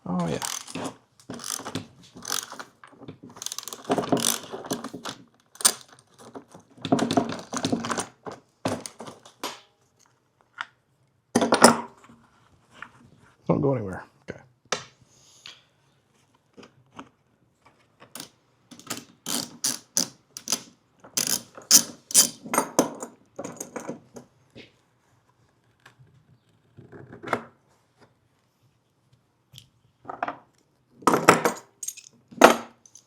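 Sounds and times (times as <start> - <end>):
metal parts clattering: 0.4 - 2.6, 3.4 - 6.0, 7.2 - 8.1, 18.2 - 20.6, 21.2 - 22.5, 31.4 - 33.0
socket ratchet clicking: 0.4 - 2.6, 3.4 - 6.0, 18.2 - 22.5, 31.5 - 32.1.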